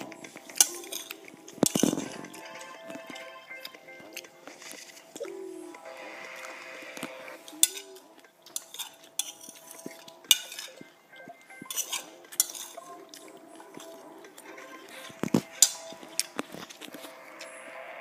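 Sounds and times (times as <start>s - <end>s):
small hard objects clattering: 0.0s - 3.2s.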